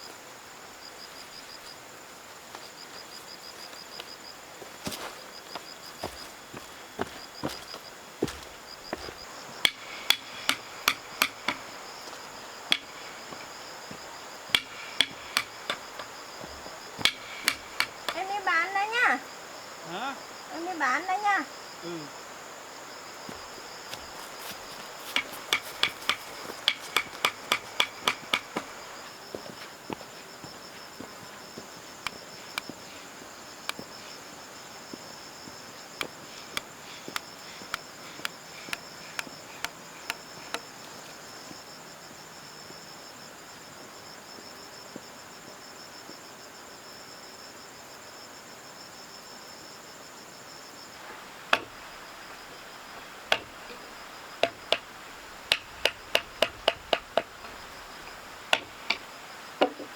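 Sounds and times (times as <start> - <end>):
insects chirring: 0.0 - 59.9
sharp knocks: 9.6 - 11.6, 14.5 - 18.2, 25.1 - 28.7.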